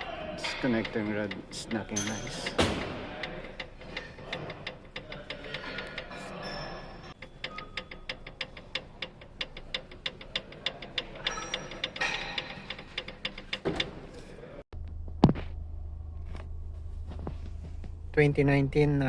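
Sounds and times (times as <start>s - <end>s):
steady engine hum: 14.8s - 19.0s.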